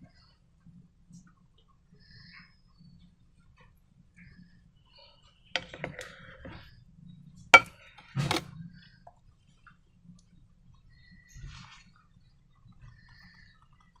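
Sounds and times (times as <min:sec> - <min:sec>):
objects clicking and knocking: 0:05.6 - 0:06.6, 0:07.6 - 0:08.5.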